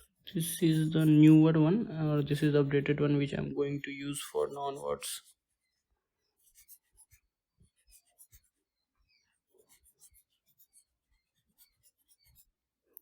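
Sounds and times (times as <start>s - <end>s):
pen scratching on paper: 0.0s - 1.4s, 4.2s - 12.7s.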